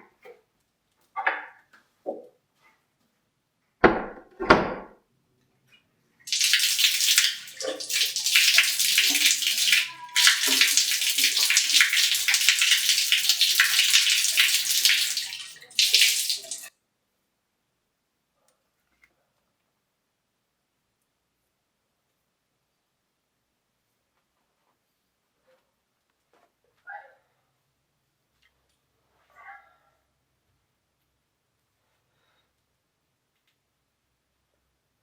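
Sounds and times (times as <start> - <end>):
water running: 6.3 - 16.7.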